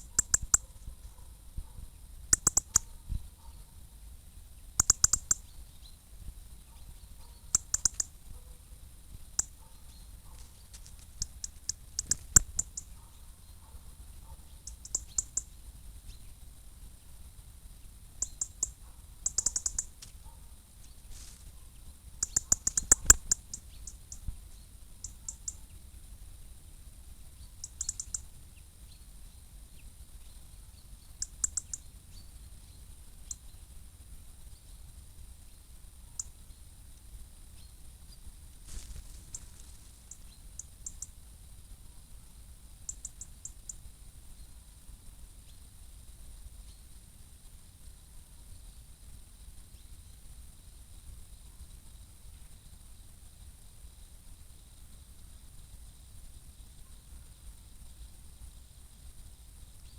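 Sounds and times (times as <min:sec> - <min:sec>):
songbird alarm ticks: 0:00.0 - 0:01.1, 0:02.3 - 0:03.6, 0:04.6 - 0:06.0, 0:06.6 - 0:16.3, 0:18.1 - 0:20.5, 0:21.7 - 0:26.0, 0:27.4 - 0:29.1, 0:30.2 - 0:32.4, 0:33.2 - 0:33.7, 0:36.1 - 0:37.7, 0:39.3 - 0:41.2, 0:42.8 - 0:43.9.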